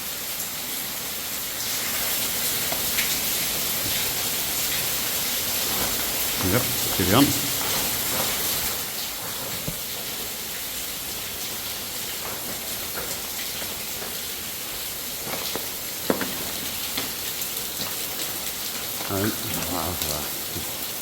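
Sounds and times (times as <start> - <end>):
waterfall rushing hiss: 1.7 - 9.0.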